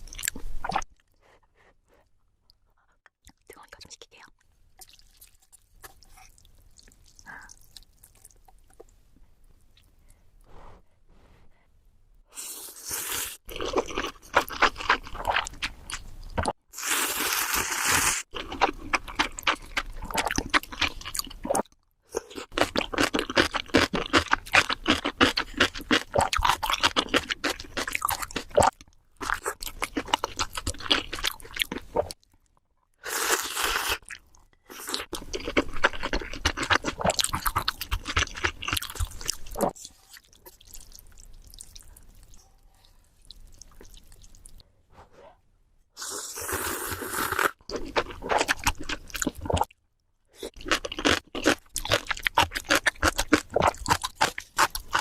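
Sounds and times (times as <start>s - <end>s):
crunchy chewing: 33.3s - 44.6s, 50.4s - 55.0s.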